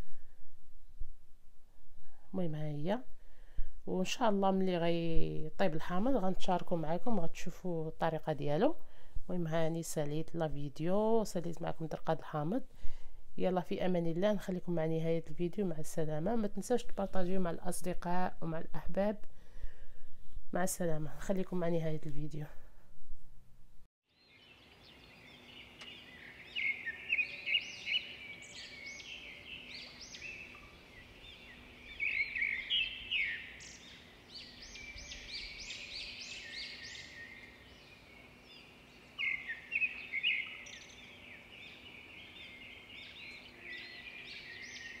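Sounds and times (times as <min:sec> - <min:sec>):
faint steady hum: 0:00.0 - 0:45.0
small birds chirping: 0:24.1 - 0:45.0.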